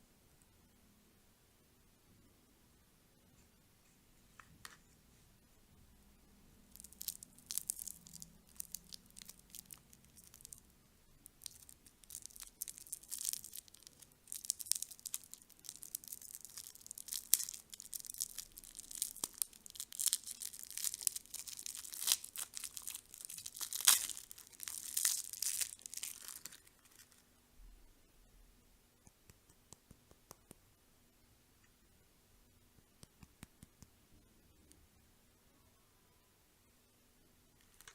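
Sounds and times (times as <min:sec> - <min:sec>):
candy wrapper crinkling: 0:06.7 - 0:27.2, 0:37.6 - 0:37.9.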